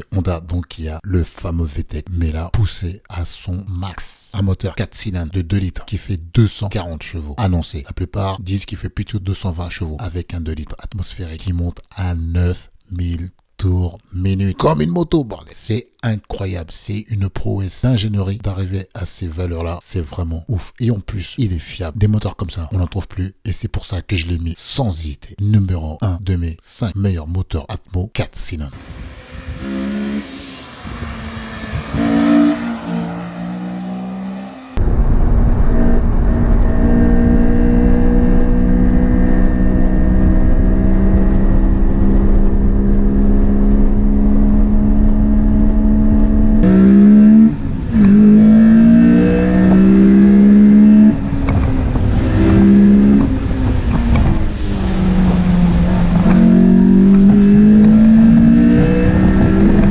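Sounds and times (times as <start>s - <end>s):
car engine revving: 28.8s - 59.9s.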